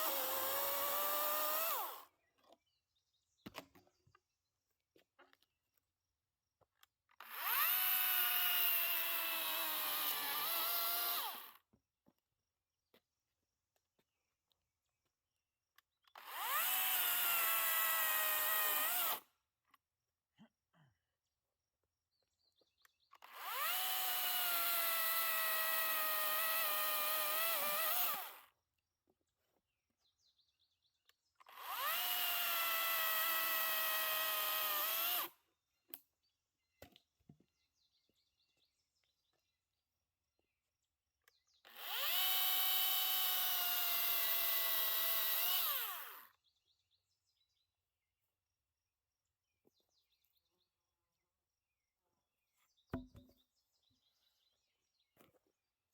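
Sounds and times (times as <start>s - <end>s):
electric chainsaw motor whine: 0.0s - 2.1s, 7.1s - 11.7s, 16.0s - 19.3s, 23.2s - 28.5s, 31.4s - 35.4s, 41.6s - 46.4s.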